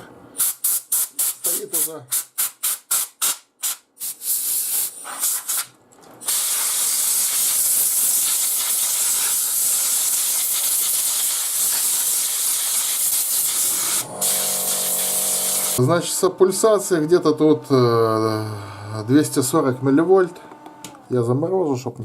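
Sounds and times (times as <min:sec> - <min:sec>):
compressed air blow gun hissing: 0:06.3 - 0:15.8.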